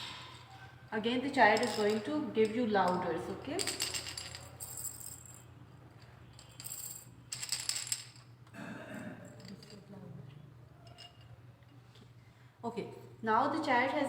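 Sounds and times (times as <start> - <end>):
cylinders rattling with grains: 1.4 - 5.5.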